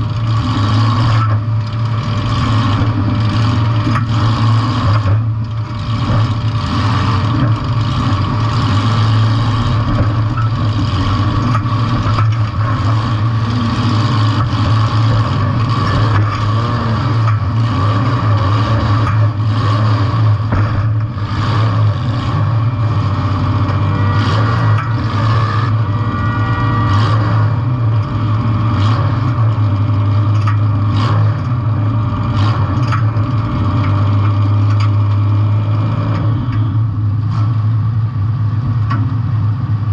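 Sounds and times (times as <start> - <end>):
car engine running hard: 0.0 - 39.9
knocks and clatter: 1.1 - 19.6, 20.2 - 22.4, 23.4 - 26.0, 29.2 - 31.6, 32.4 - 35.3.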